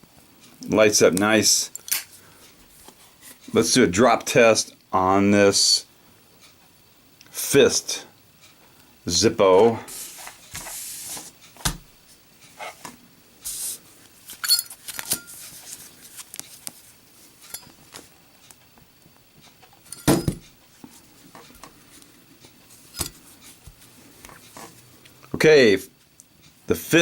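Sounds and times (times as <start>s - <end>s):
short scraping hisses: 9.9s - 11.3s, 13.4s - 13.9s.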